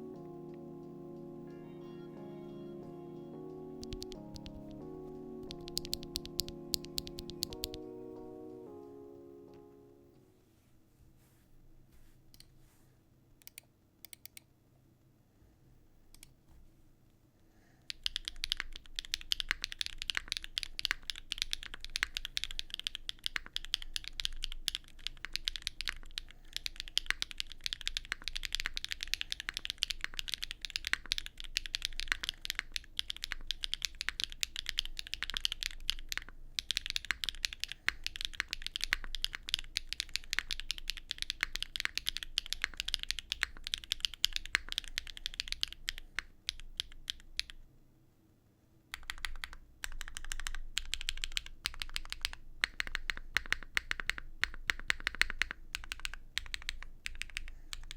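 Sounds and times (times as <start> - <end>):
fast mechanical keyboard typing: 3.8 - 4.8, 5.4 - 7.8, 17.9 - 47.6, 48.9 - 57.9
faint clicks: 16.1 - 16.4.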